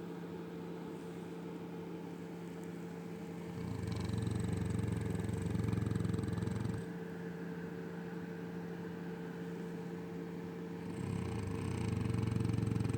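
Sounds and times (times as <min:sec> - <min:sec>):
steady low hum: 0:00.0 - 0:12.9
dog snoring: 0:03.5 - 0:06.9, 0:10.8 - 0:12.9.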